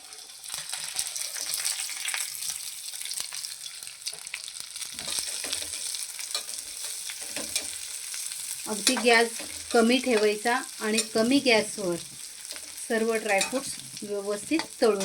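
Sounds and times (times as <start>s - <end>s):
fruits frying in ghee: 0.0s - 15.0s
spoon stirring in pan: 4.0s - 7.9s, 12.1s - 14.8s.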